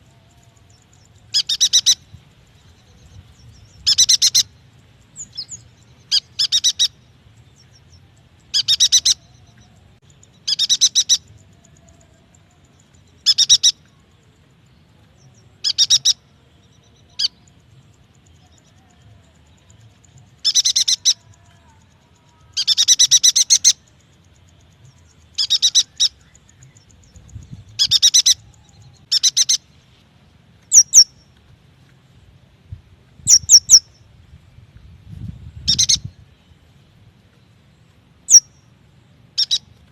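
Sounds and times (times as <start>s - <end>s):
bird chattering twitter: 0.6s - 2.1s, 3.5s - 4.6s, 5.2s - 7.0s, 8.5s - 12.4s, 13.2s - 13.9s, 15.6s - 16.2s, 19.6s - 29.7s, 30.7s - 31.2s, 33.2s - 34.0s, 35.6s - 36.2s, 38.3s - 38.6s, 39.4s - 39.7s.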